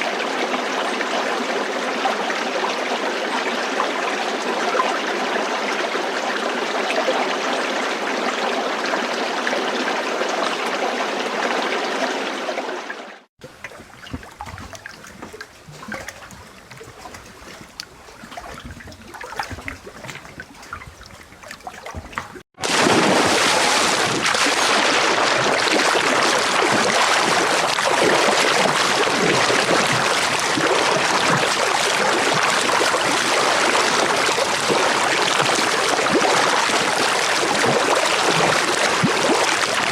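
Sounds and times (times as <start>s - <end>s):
water rushing: 10.3s - 39.9s
running water: 12.7s - 39.9s
water trickling: 13.4s - 22.4s
water drips and splashes: 13.4s - 39.9s.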